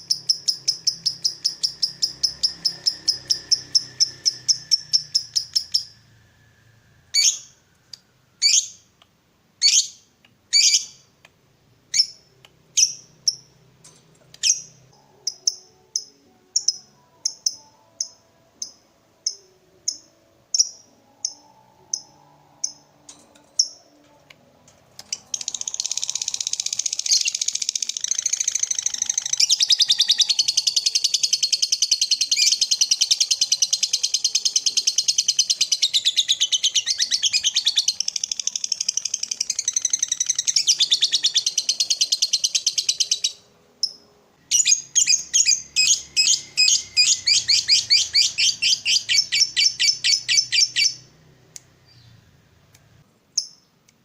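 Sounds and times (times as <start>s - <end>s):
bird chattering trill: 0.0s - 5.9s, 44.5s - 51.0s
bird sharp high chirps: 0.0s - 6.1s, 7.1s - 7.6s, 8.4s - 8.9s, 9.6s - 11.1s, 25.0s - 51.2s.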